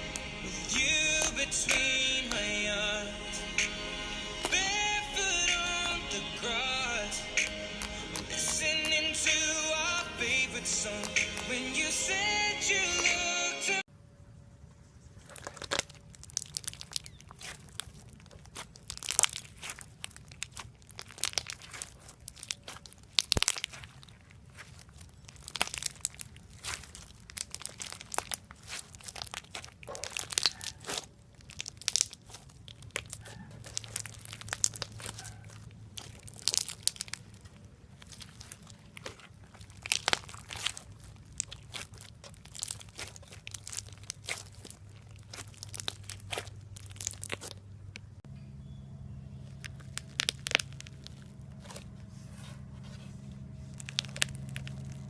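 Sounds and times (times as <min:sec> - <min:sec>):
slime crackling and popping: 0:00.0 - 0:11.9, 0:15.2 - 0:48.2, 0:49.4 - 0:52.0, 0:53.6 - 0:55.0.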